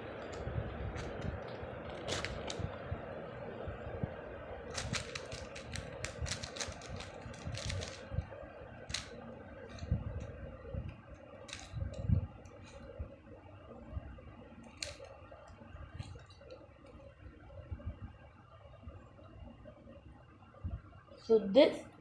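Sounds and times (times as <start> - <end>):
plastic clicks and crackles: 0.1 - 2.7, 4.7 - 8.2, 8.9 - 10.3, 10.9 - 12.8, 14.6 - 17.1.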